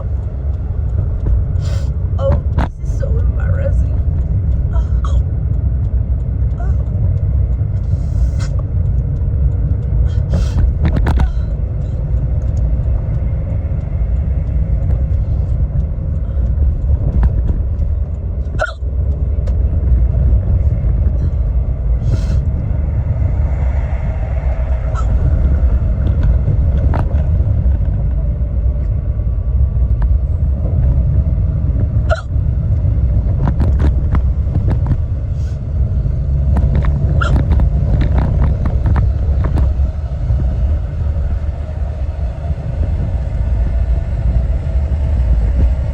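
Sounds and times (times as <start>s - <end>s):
car cabin rumble: 0.0s - 45.9s
woman hiccuping: 18.6s - 18.8s, 32.1s - 32.3s.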